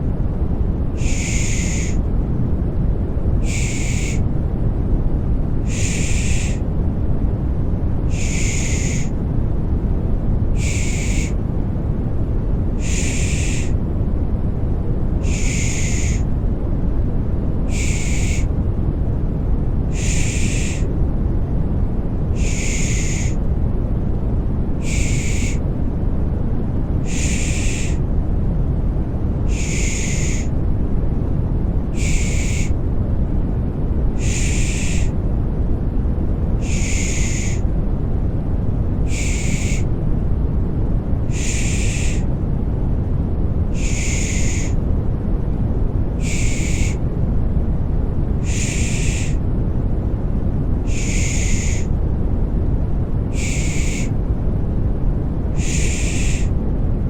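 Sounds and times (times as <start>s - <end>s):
deep white-noise hum: 0.0s - 57.0s
shushing hisses: 1.0s - 2.0s, 3.4s - 4.3s, 5.6s - 6.7s, 8.1s - 9.2s, 10.6s - 11.4s, 12.8s - 13.8s, 15.2s - 16.3s, 17.7s - 18.5s, 19.9s - 20.9s, 22.4s - 23.4s, 24.8s - 25.6s, 27.0s - 28.0s, 29.4s - 30.6s, 31.8s - 32.8s, 34.2s - 35.2s, 36.6s - 37.6s, 39.1s - 39.9s, 41.3s - 42.3s, 43.7s - 44.8s, 46.2s - 47.0s, 48.4s - 49.4s, 50.8s - 52.0s, 53.3s - 54.1s, 55.6s - 56.6s.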